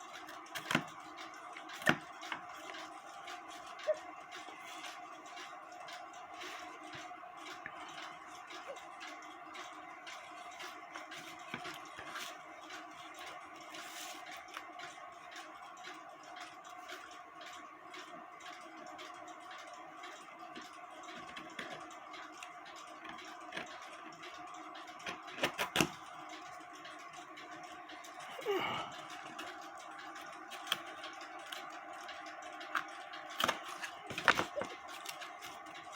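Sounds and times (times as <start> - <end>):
steady hum: 26.1 - 35.9.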